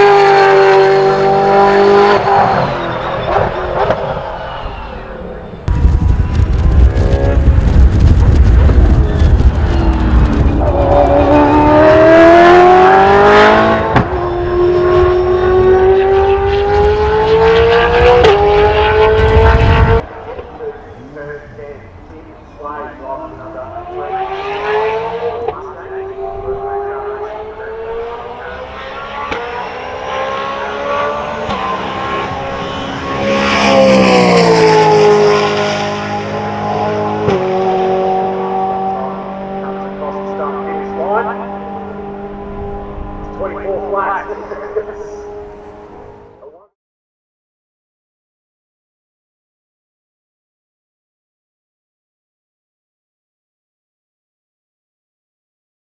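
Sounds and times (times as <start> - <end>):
race car engine accelerating: 0.0 - 46.4
gear change: 5.6 - 20.8.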